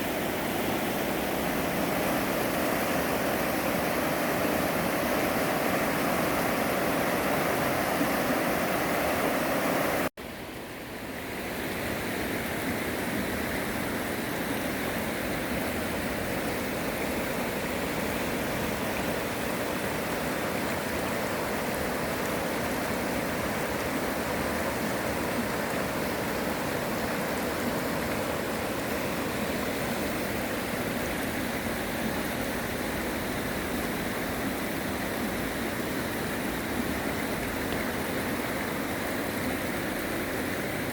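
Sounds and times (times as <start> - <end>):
stream rushing over rocks: 0.0 - 40.9.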